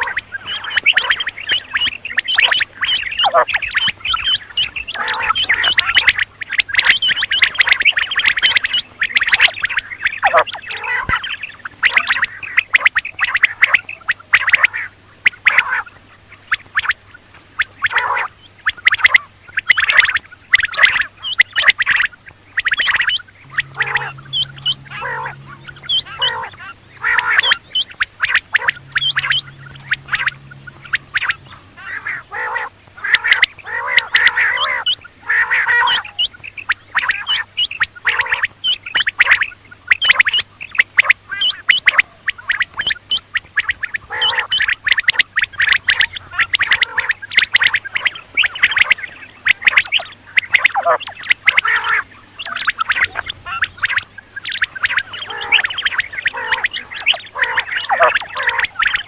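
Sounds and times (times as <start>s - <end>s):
quail chirping: 0.0s - 59.0s
steady low hum: 0.0s - 59.0s
low droning tone: 23.3s - 33.6s.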